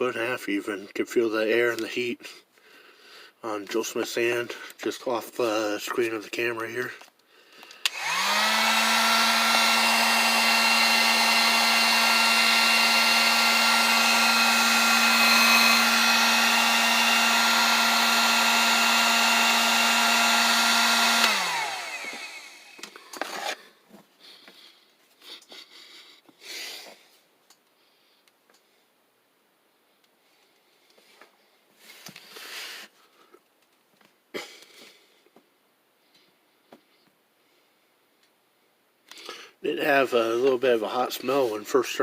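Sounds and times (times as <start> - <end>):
heat gun fan whirring: 7.6 - 23.7.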